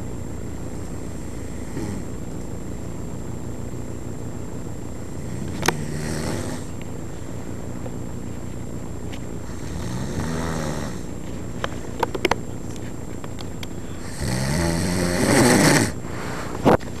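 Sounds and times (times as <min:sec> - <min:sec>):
person snoring: 0:01.0 - 0:02.2, 0:05.2 - 0:06.8, 0:09.4 - 0:11.1, 0:14.0 - 0:16.0.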